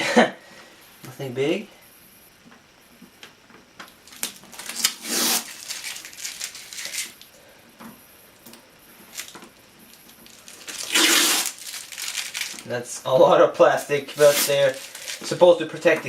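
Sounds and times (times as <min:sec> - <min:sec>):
plastic film peeling and crinkling: 0:03.9 - 0:07.3, 0:08.4 - 0:12.9, 0:13.6 - 0:16.0.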